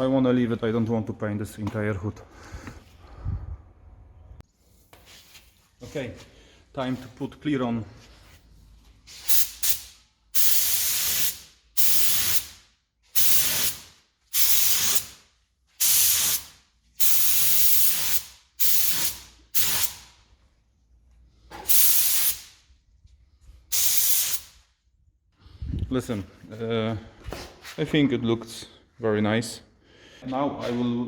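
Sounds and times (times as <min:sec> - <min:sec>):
spray bursts: 0:09.2 - 0:20.2, 0:21.7 - 0:22.6, 0:23.7 - 0:24.6.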